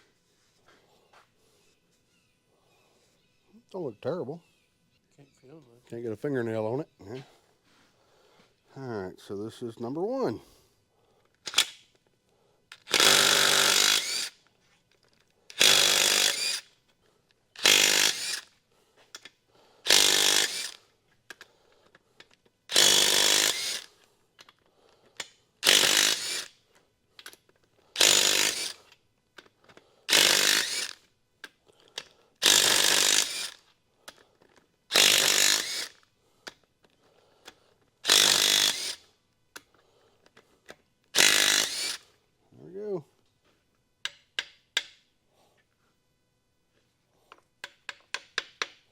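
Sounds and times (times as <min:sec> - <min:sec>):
handheld power tool bursts: 0:11.4 - 0:11.9, 0:12.7 - 0:14.4, 0:15.5 - 0:16.8, 0:17.5 - 0:26.6, 0:27.2 - 0:36.6, 0:37.4 - 0:39.7, 0:40.3 - 0:42.2.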